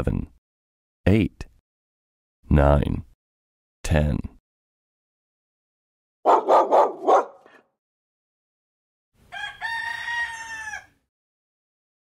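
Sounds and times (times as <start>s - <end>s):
dog barking: 6.2s - 7.6s
rooster crowing: 9.3s - 11.0s.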